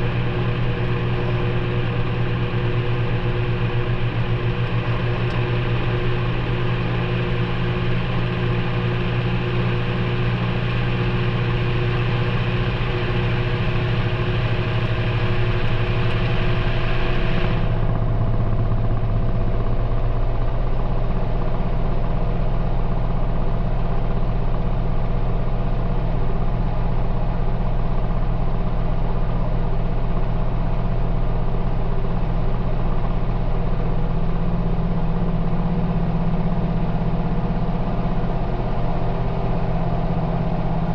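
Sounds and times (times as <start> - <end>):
washing machine motor hum: 0.0 - 20.2, 33.8 - 40.9.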